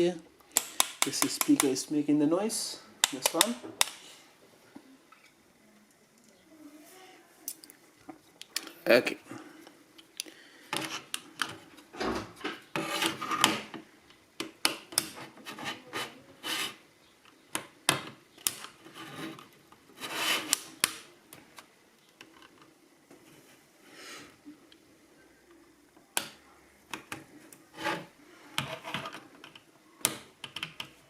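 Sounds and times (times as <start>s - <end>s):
sharp plastic clicks: 3.0s - 4.0s.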